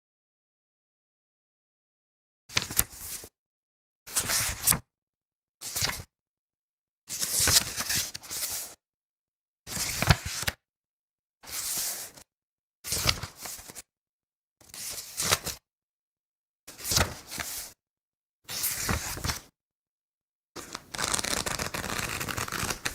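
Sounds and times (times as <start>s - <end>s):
paper pages turning: 18.6s - 19.4s, 20.6s - 22.9s.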